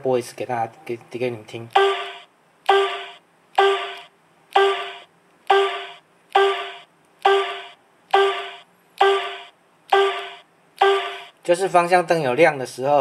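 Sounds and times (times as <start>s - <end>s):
turn signal tone: 4.6s - 11.4s.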